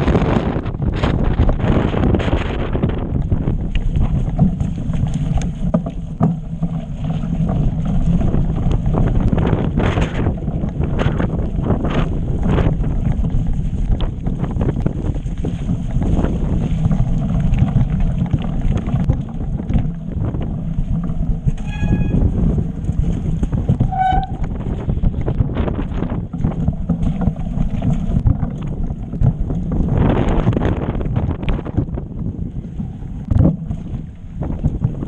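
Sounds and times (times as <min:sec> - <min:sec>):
bike rattling and knocking: 0:00.0 - 0:35.0
tyres rumbling on rocks: 0:00.0 - 0:35.0
wind buffeting microphone: 0:00.0 - 0:35.0
short squeals: 0:21.6 - 0:22.3.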